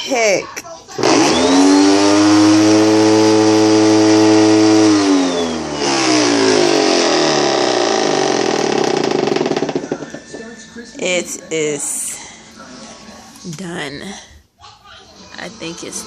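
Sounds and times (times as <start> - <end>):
vacuum cleaner motor running: 1.0 - 10.3.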